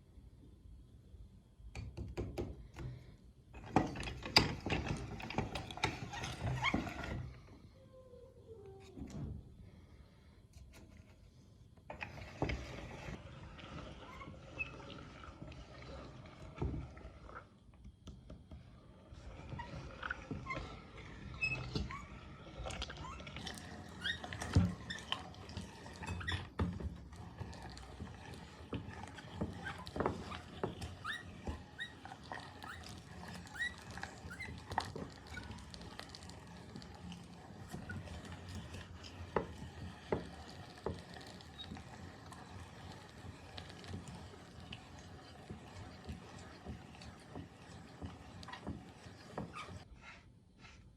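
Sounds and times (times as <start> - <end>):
meat grinder squelching: 18.8 - 49.9.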